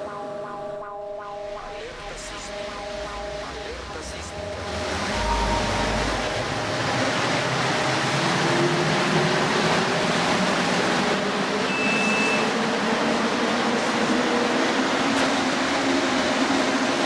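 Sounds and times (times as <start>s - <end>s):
brief high tone: 0.0s - 6.9s, 11.7s - 12.6s
train rumble and hiss: 2.2s - 17.0s.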